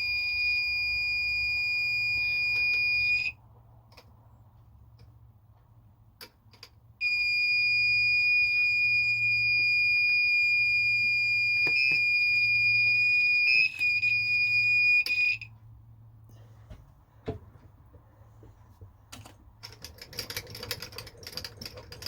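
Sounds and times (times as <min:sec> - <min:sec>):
high-pitched electronic alarm tone: 0:07.0 - 0:15.5.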